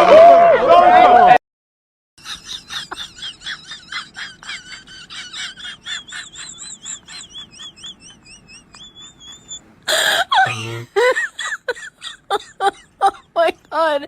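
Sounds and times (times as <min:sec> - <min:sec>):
rapid bird-like chirping: 0:06.0 - 0:09.6.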